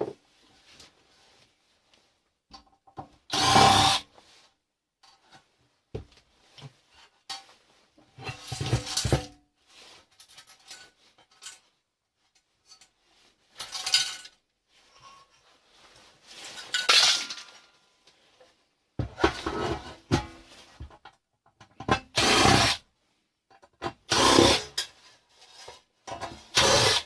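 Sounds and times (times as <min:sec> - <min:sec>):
scraping and clattering of parts: 0:06.5 - 0:22.7, 0:23.5 - 0:27.0.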